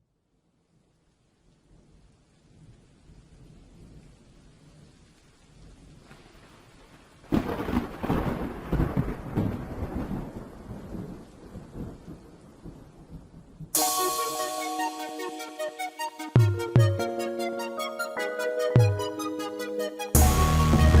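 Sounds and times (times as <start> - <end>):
thunder crack and rumble: 5.6 - 13.7.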